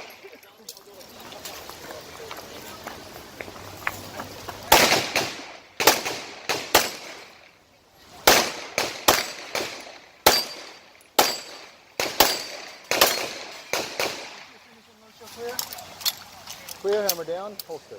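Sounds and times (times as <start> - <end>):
pistol shots with echo: 4.7 - 7.4, 8.2 - 14.6.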